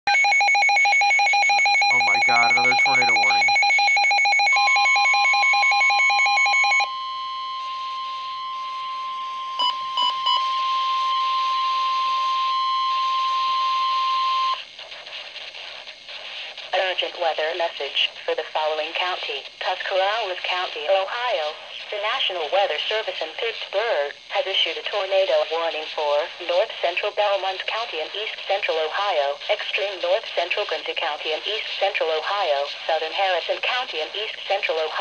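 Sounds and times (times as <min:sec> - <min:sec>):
pulsing electronic alarm: 0:00.1 - 0:14.6
steady high alarm tone: 0:00.1 - 0:14.6.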